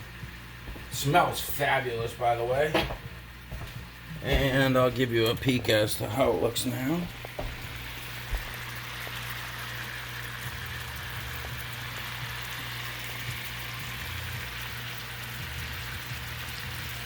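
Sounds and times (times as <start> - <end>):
fish sizzling in frying pan: 7.1 - 17.0.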